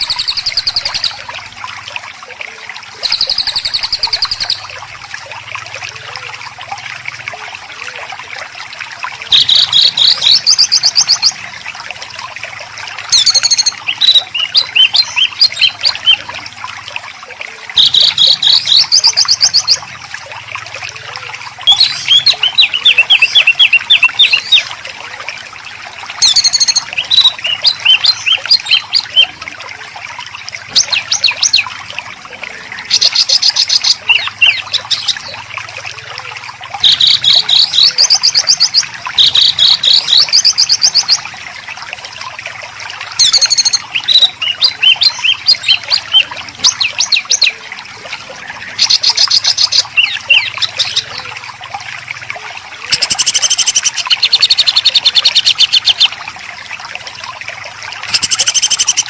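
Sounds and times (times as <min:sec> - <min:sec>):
songbirds harsh rapid singing: 0:21.4 - 0:24.8, 0:32.7 - 0:35.5, 0:43.2 - 0:47.6, 0:58.1 - 0:59.0.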